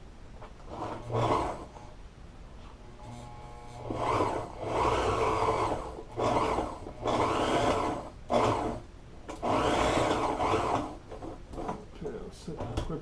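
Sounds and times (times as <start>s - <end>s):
sewing machine stitching: 0.7s - 1.7s, 3.8s - 11.8s.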